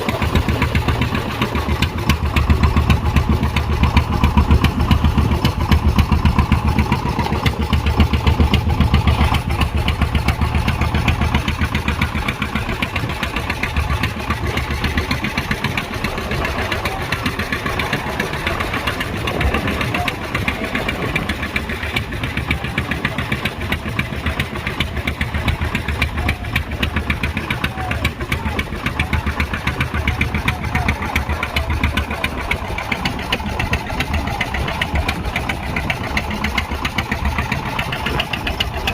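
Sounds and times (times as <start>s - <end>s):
engine chugging steadily: 0.0s - 38.9s.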